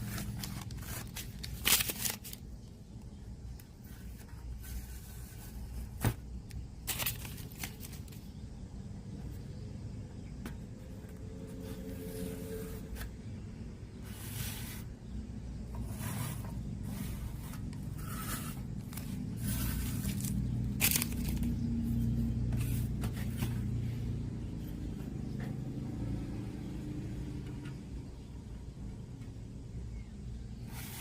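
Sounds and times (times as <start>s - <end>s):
scraping and rustling of parts: 0.0s - 2.5s, 3.8s - 8.3s, 15.7s - 23.8s
steady low hum: 0.0s - 31.0s.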